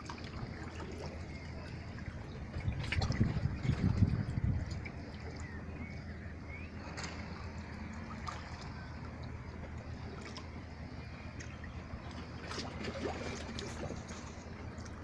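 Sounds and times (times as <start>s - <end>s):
sea water lapping: 0.0s - 15.0s
steady low rumble: 0.0s - 15.0s
small clicks and splashes: 2.5s - 5.6s, 6.8s - 10.6s, 11.4s - 15.0s.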